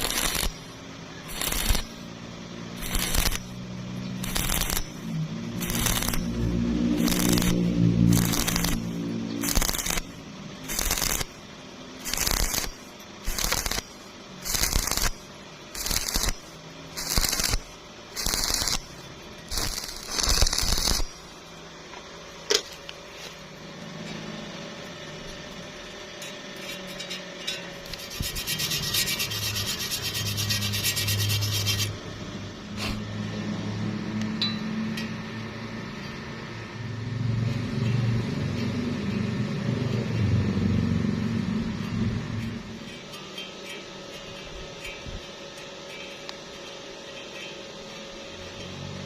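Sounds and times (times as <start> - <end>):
scraping strokes on metal: 0.0 - 21.4, 26.2 - 32.0, 41.6 - 49.0
steady hiss: 0.0 - 21.4.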